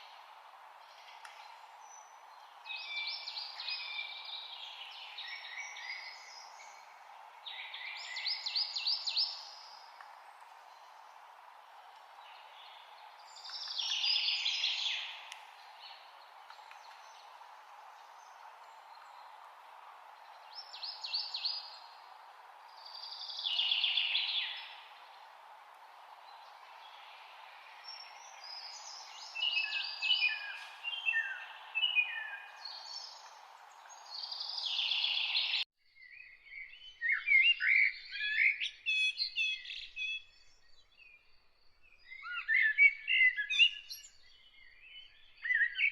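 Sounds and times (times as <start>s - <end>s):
steady background hiss: 0.0s - 35.6s
songbirds singing: 0.0s - 45.9s.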